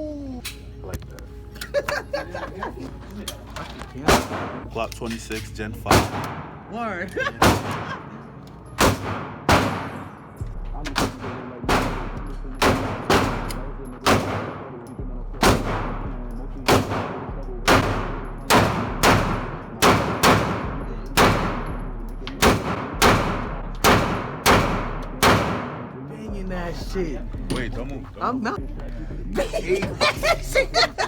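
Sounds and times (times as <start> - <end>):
handgun shots: 4.1 - 4.7, 5.9 - 6.6, 7.4 - 8.1, 8.8 - 26.0.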